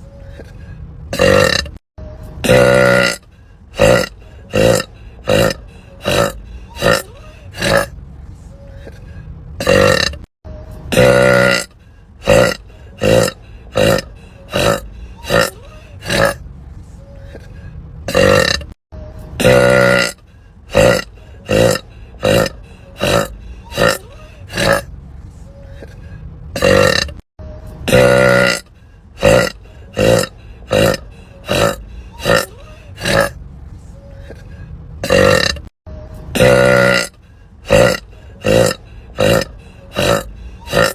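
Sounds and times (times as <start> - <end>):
women burping: 3.8 - 7.9, 37.7 - 40.9.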